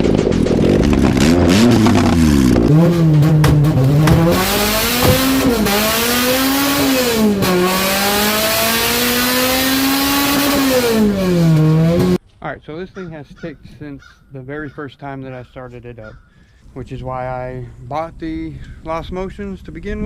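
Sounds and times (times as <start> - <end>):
car engine revving: 0.0 - 12.2.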